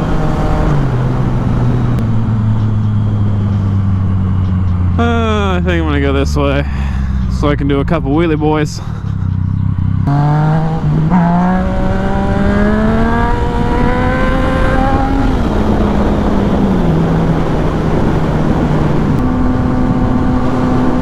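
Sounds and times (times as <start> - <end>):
motorcycle engine accelerating: 0.0 - 21.0
wind buffeting microphone: 10.6 - 21.0.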